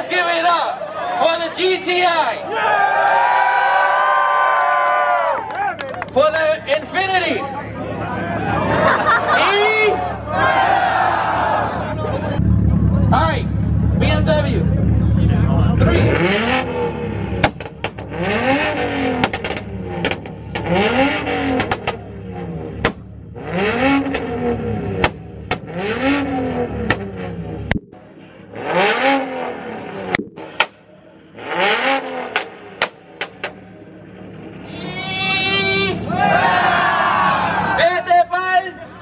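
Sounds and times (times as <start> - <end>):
car engine revving: 9.8 - 34.6
exhaust pops and cracks: 17.4 - 18.2, 19.2 - 20.8, 21.5 - 22.1, 22.8 - 23.2, 25.0 - 25.8, 26.8 - 27.1, 32.3 - 33.7.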